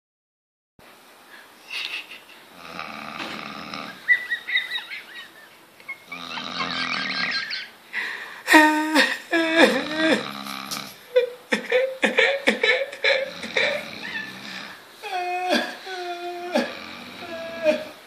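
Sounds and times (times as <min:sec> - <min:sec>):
person snoring loudly: 0:02.5 - 0:04.0, 0:06.1 - 0:07.4, 0:08.6 - 0:11.0, 0:13.1 - 0:18.0
drawn-out vocal sounds: 0:05.9 - 0:11.1, 0:11.7 - 0:18.0.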